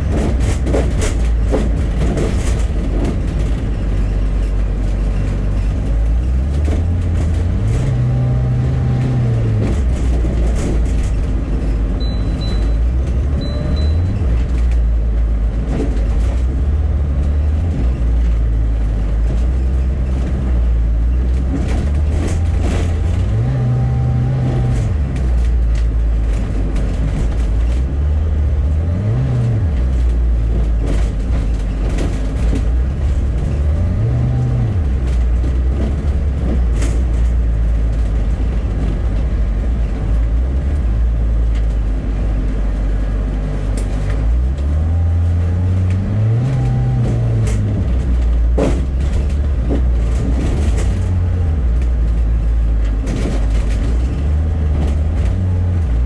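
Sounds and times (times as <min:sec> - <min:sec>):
bus engine running: 0:00.0 - 0:56.0
short high beeps: 0:12.0 - 0:12.8, 0:13.4 - 0:14.1.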